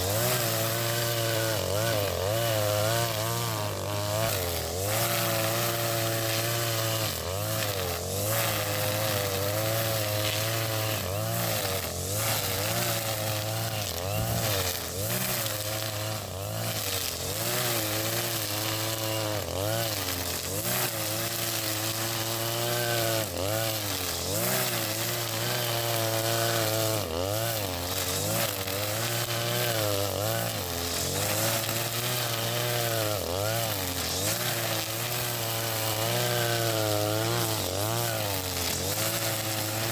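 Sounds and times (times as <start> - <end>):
brush cutter engine running: 0.0 - 39.9
trimmer line cutting grass: 0.0 - 39.9.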